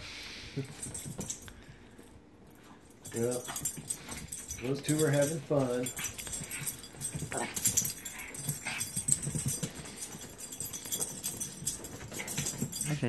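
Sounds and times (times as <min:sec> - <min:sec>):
dogs scuffling: 0:00.6 - 0:13.0.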